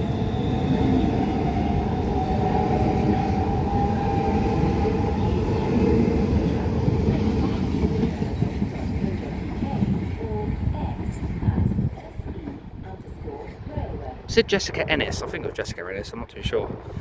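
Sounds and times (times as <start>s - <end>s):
train wheels rumbling: 0.0s - 13.3s.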